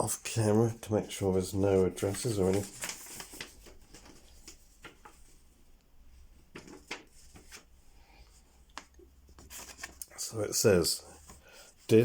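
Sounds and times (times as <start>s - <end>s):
paper letter rustling: 1.1s - 5.4s.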